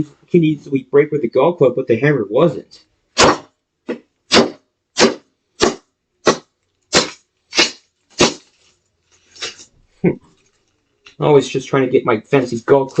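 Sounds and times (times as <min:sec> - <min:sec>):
plastic toy being struck: 0:03.2 - 0:08.4.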